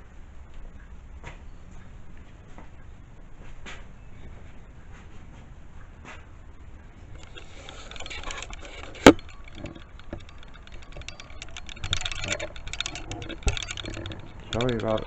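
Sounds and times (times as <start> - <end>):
rustling: 7.1 - 15.0
camera handling noise: 7.2 - 15.0.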